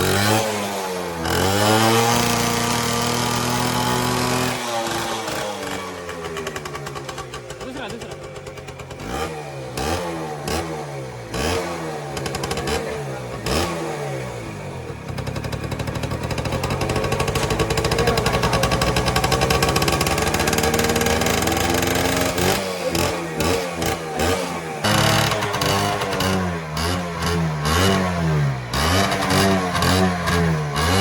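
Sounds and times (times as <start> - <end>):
two-stroke motorcycle engine revving: 0.0 - 31.0.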